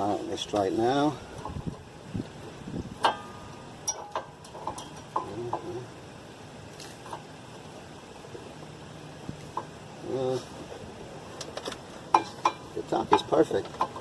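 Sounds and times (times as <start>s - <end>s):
light metal clicks and taps: 3.0s - 5.7s, 11.4s - 14.0s.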